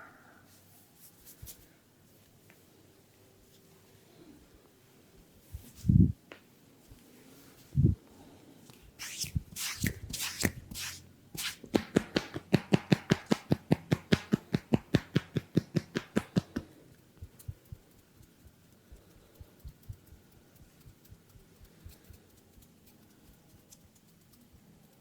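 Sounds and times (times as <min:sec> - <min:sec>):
hands tapping on body: 0:11.4 - 0:22.1.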